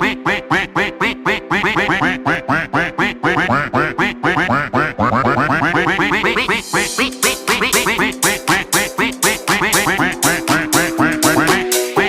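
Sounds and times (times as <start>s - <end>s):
duck quacks in novelty tune: 0.0s - 12.0s.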